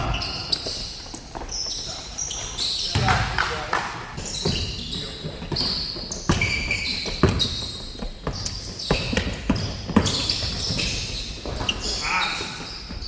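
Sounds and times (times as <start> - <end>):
shoe squeaks: 0.0 - 3.3, 4.2 - 13.0
basketball bouncing on court: 2.8 - 3.6, 4.2 - 11.8.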